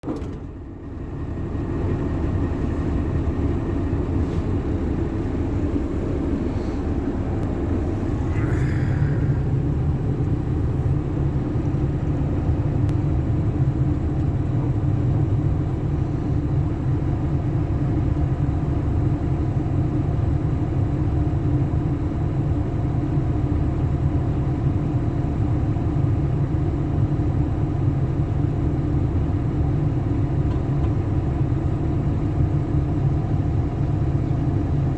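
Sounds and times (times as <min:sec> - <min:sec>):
excavator diesel engine running: 0:00.0 - 0:34.9.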